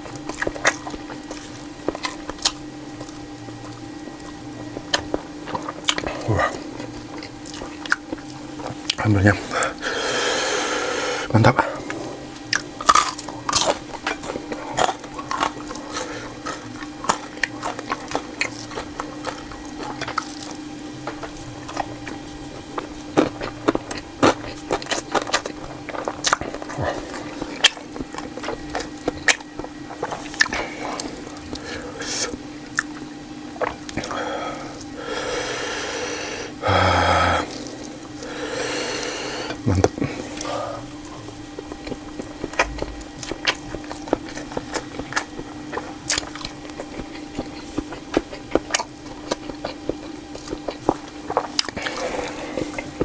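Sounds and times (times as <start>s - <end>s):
steady low hum: 0.0s - 53.0s
wet chewing and mouth sounds: 0.0s - 53.0s.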